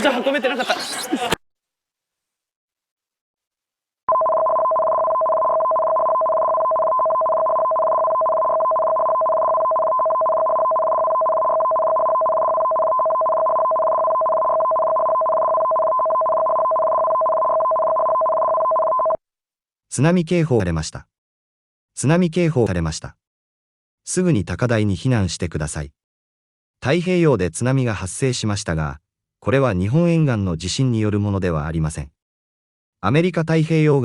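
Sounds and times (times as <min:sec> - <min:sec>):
warbling two-pitch warning beep: 0:04.1 - 0:19.2.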